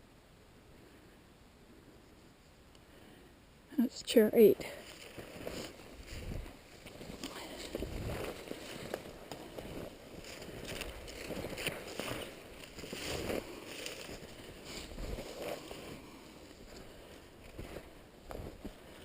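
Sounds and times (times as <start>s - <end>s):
footsteps on trail: 4.6s - 19.0s.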